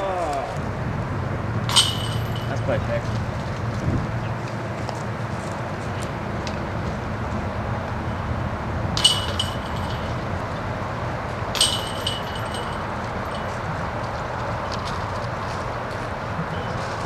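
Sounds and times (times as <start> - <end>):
outdoor background noise: 0.0 - 17.0
discs clanking on metal chains: 1.7 - 3.2, 9.0 - 14.0.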